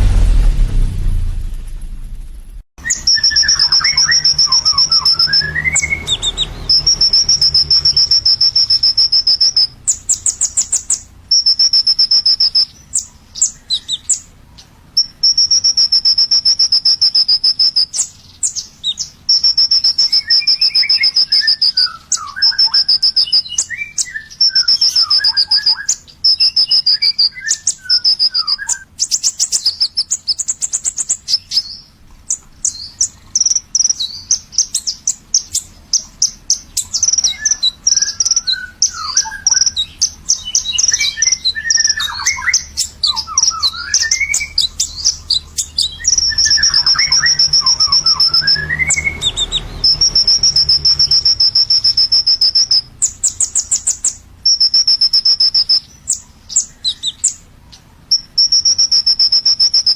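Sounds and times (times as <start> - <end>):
sunbird twittering chirps: 2.8 - 59.9
bird buzzing trills: 2.9 - 14.2.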